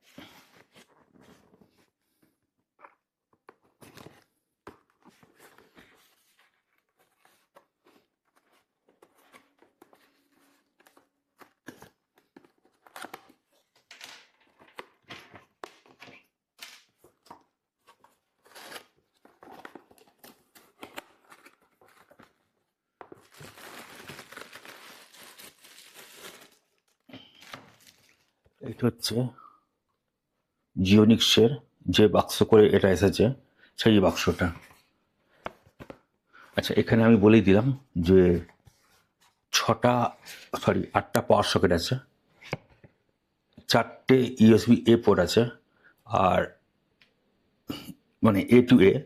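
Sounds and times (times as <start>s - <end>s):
packaging rustling and crinkling: 16.9s - 28.6s
packaging tearing: 18.4s - 22.2s, 23.1s - 28.3s.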